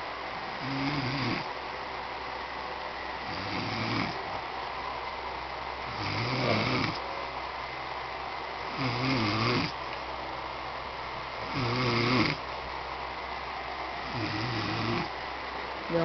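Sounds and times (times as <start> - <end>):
man snoring heavily: 0.6 - 1.5, 3.2 - 4.2, 5.8 - 7.0, 8.7 - 9.8, 11.4 - 12.4, 14.0 - 15.1.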